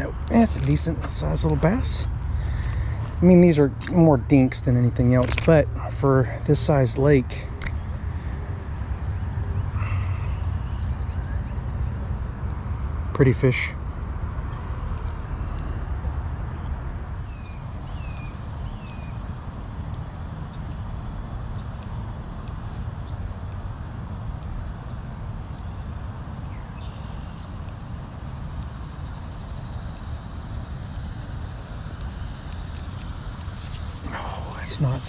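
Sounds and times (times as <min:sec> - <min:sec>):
faint high insect buzz: 0:00.0 - 0:35.0
steady low rumble: 0:00.0 - 0:35.0
bird chirps: 0:09.0 - 0:13.0, 0:13.6 - 0:19.2, 0:26.5 - 0:27.6.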